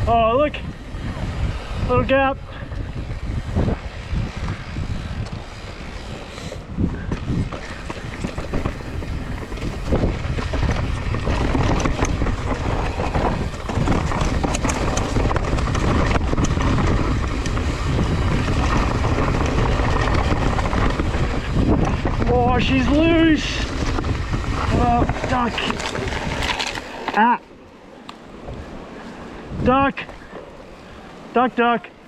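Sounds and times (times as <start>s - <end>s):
bike tyres rolling over dirt: 0.0s - 32.0s
wind buffeting microphone: 0.0s - 32.0s
bike clicks and rattles: 2.5s - 27.3s.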